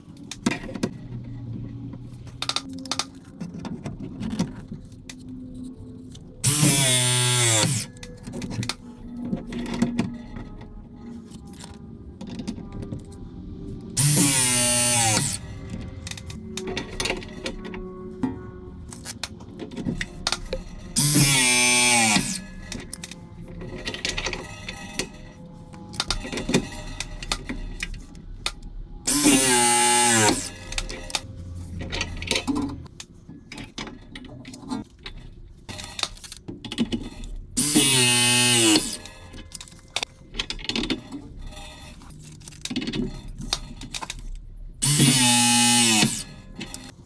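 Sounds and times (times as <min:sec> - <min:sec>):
background music: 0:00.0 - 0:43.6
press tool motor crimping: 0:06.4 - 0:08.1, 0:14.0 - 0:17.0, 0:21.0 - 0:23.0, 0:29.1 - 0:31.3, 0:37.6 - 0:39.3, 0:44.8 - 0:47.0.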